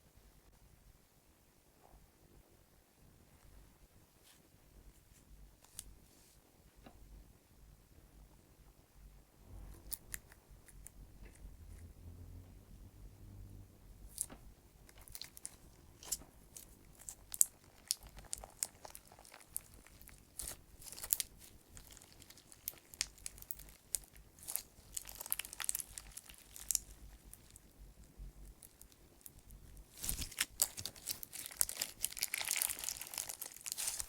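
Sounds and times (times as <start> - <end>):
slime crackling and popping: 14.1 - 34.0.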